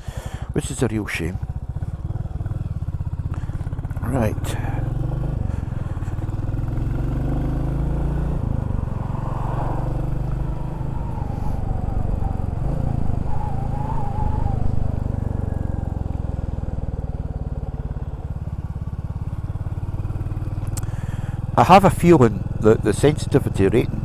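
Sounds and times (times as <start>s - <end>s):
motorcycle engine running: 0.0s - 24.0s
wind rushing past: 4.8s - 15.7s.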